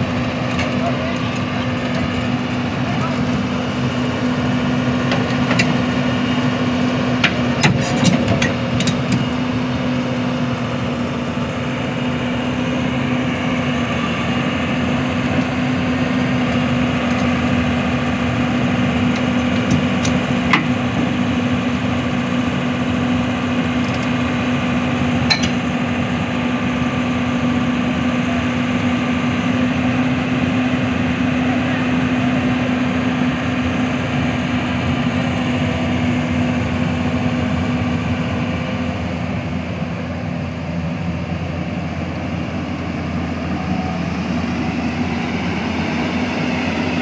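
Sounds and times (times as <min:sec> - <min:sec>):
heavy machine engine running: 0:00.0 - 0:47.0
sharp metallic clanks: 0:25.2 - 0:25.8.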